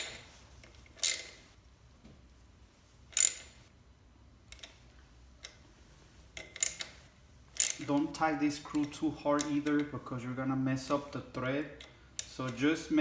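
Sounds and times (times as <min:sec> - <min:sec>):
socket ratchet ratcheting: 0:00.0 - 0:01.5, 0:03.1 - 0:03.6, 0:06.4 - 0:07.0, 0:07.6 - 0:08.0.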